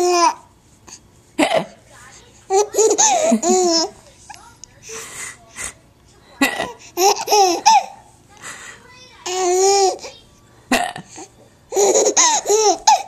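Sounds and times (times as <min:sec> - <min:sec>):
baby giggling: 0:02.5 - 0:04.0, 0:06.4 - 0:08.0, 0:09.2 - 0:10.1, 0:11.7 - 0:13.0
baby laughing: 0:02.5 - 0:04.0, 0:06.4 - 0:08.0, 0:09.3 - 0:10.1, 0:11.7 - 0:13.0.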